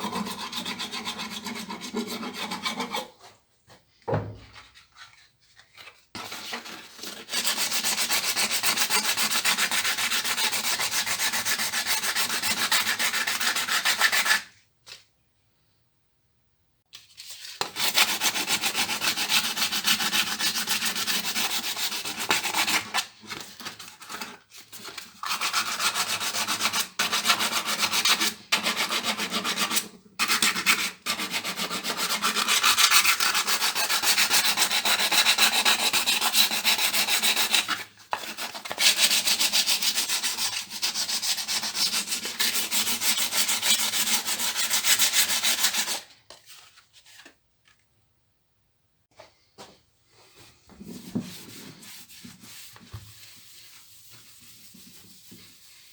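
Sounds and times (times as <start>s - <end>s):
sandpaper rubbing on filler: 6.5s - 14.5s, 17.8s - 23.1s, 25.2s - 46.0s, 50.9s - 55.9s.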